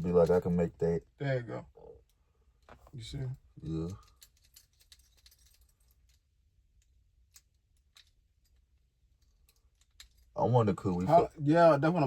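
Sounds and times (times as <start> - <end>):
light rattles: 2.0 - 12.0.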